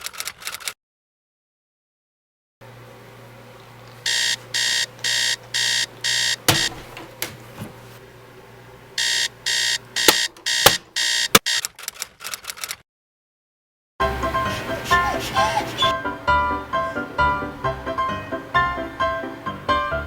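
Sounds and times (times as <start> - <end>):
alarm clock beeping: 4.1 - 6.8, 9.0 - 11.6
sharp clicks or knocks: 6.0 - 7.4, 9.0 - 11.6.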